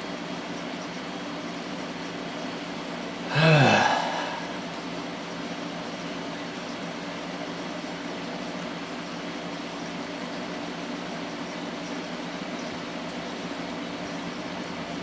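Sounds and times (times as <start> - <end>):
fan humming: 3.2 - 5.7.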